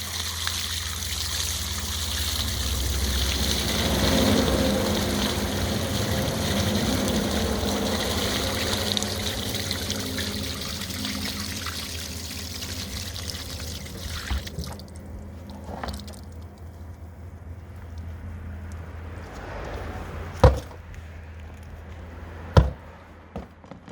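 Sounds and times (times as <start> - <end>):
water pouring and trickling: 0.0 - 17.0, 20.4 - 20.8
steady low hum: 0.0 - 23.6.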